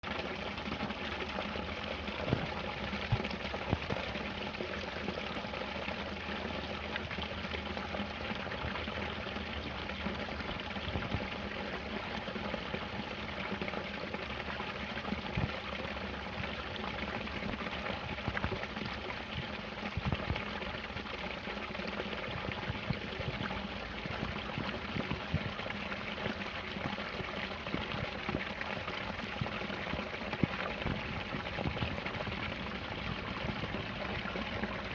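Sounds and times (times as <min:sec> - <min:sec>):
small waterfall splashing: 0:00.0 - 0:34.9.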